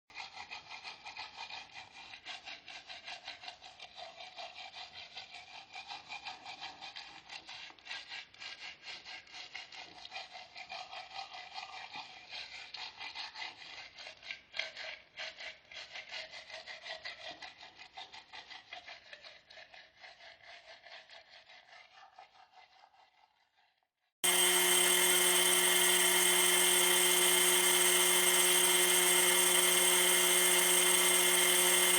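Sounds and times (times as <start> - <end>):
loud steady hum: 24.2 - 31.9.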